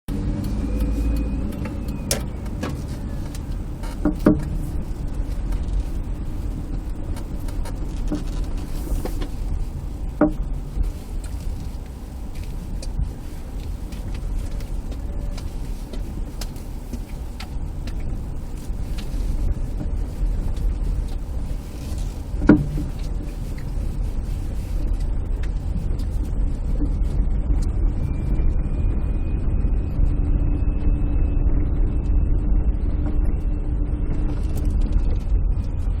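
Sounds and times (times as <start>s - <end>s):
car road and engine rumble: 0.0s - 36.0s
suspension knocking: 0.1s - 21.6s
faint steady whine: 0.1s - 36.0s.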